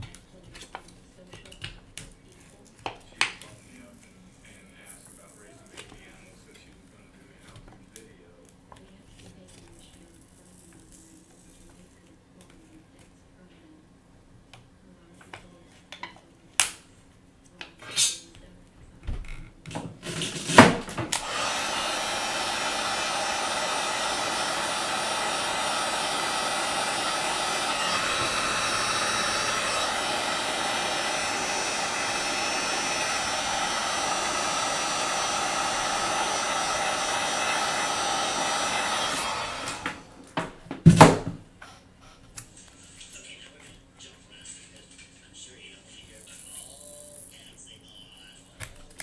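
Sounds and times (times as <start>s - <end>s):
hot-air blower running: 19.0s - 42.5s.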